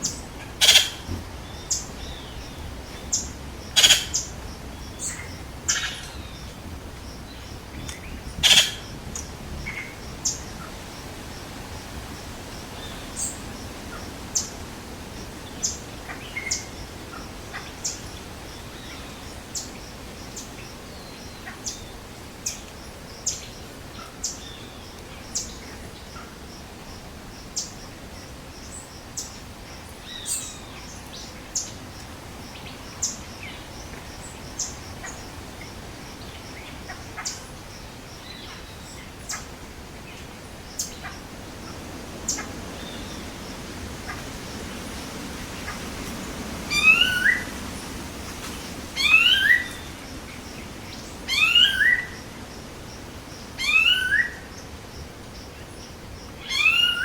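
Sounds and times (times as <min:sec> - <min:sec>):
rising bird calls: 0:00.0 - 0:04.3, 0:07.8 - 0:09.0, 0:46.6 - 0:47.6, 0:49.0 - 0:49.9, 0:51.3 - 0:52.2, 0:53.6 - 0:54.5, 0:56.4 - 0:57.0
birds chirping: 0:00.0 - 0:26.2, 0:32.4 - 0:57.0.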